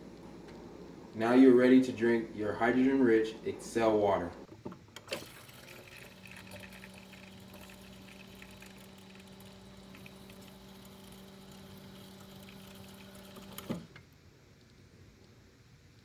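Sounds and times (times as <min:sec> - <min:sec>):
machine humming: 0:00.0 - 0:14.0
water pouring: 0:05.1 - 0:14.0.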